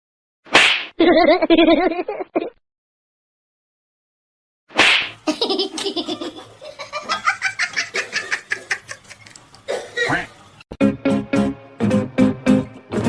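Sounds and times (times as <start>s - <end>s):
loud laughter: 5.2s - 9.3s.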